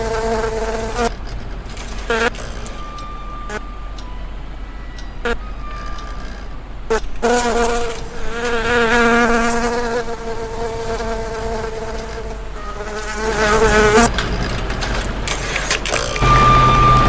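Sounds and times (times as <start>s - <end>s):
flying insect buzzing: 0.0s - 1.2s, 1.8s - 2.9s, 6.9s - 14.1s.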